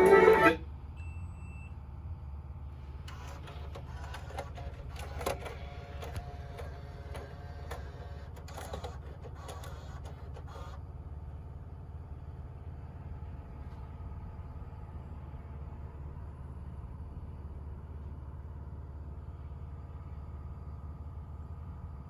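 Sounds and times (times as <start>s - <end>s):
small mechanism whirring and clicking: 3.0s - 10.8s.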